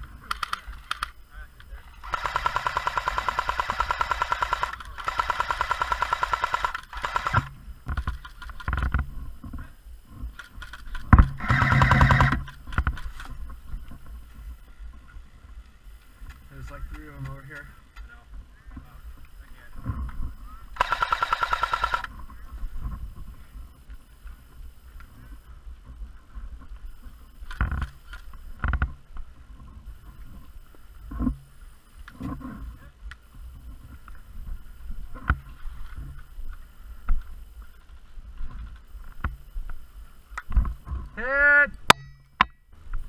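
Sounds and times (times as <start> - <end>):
airsoft gun full-auto burst: 2.0 - 8.6, 10.6 - 12.6, 20.8 - 22.1
sharp knocks and clicks: 10.4 - 13.3.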